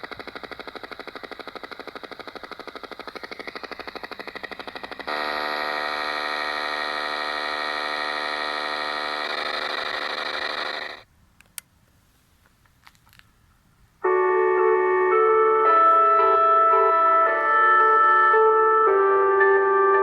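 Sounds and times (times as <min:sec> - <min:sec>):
rapidly pulsing electronic tone: 0:00.0 - 0:11.0
steady buzzy electronic chord: 0:03.2 - 0:11.0, 0:14.0 - 0:20.0.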